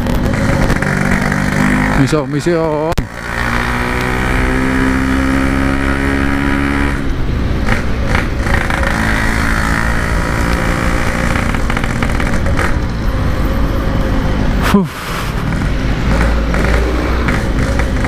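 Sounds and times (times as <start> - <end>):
two-stroke motorcycle engine running: 0.0 - 3.7, 7.6 - 13.6, 15.5 - 18.0.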